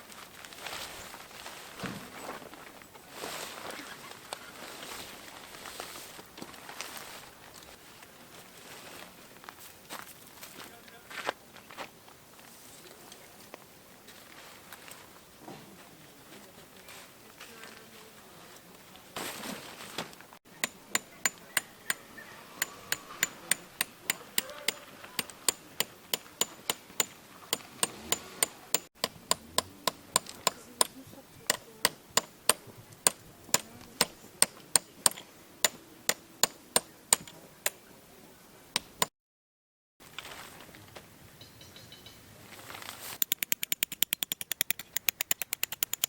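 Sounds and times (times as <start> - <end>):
tent pegs being hammered: 20.5 - 37.8, 38.8 - 39.1.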